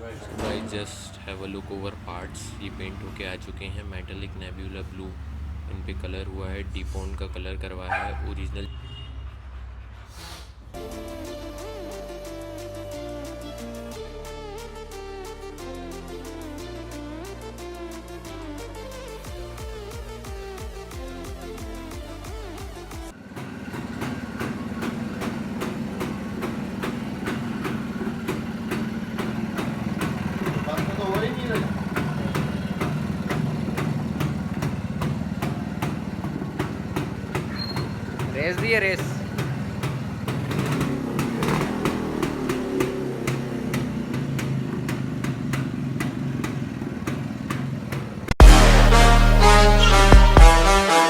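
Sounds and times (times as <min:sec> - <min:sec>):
two-stroke engine idling: 0:00.0 - 0:10.1, 0:19.3 - 0:49.6
engine ticking: 0:00.0 - 0:14.0, 0:18.8 - 0:50.8
music: 0:10.8 - 0:23.1, 0:48.4 - 0:51.0.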